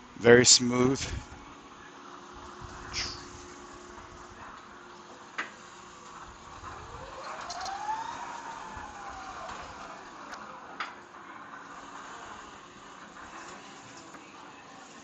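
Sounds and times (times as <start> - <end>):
electric motor whine: 6.1 - 10.8.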